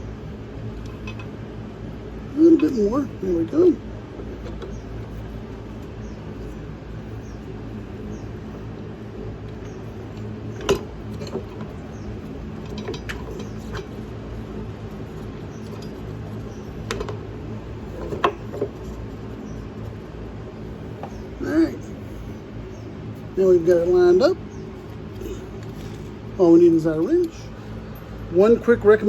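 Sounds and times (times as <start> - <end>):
steady low hum: 0.0 - 29.0
metal clicks and knocks: 0.8 - 1.3, 9.4 - 19.2.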